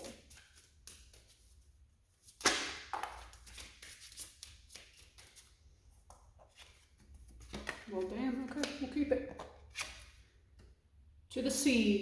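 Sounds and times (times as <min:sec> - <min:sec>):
cards slapping: 0:02.3 - 0:05.5
cards flicking and rustling: 0:02.3 - 0:05.6.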